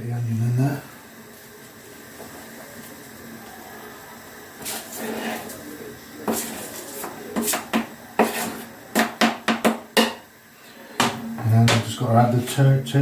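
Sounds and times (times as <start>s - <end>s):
utensils knocking against cookware: 6.3s - 10.3s.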